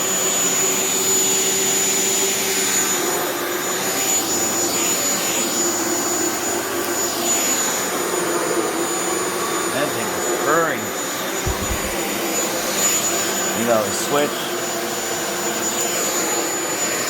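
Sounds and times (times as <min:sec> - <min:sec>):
stick vacuum running: 0:11.4 - 0:12.1.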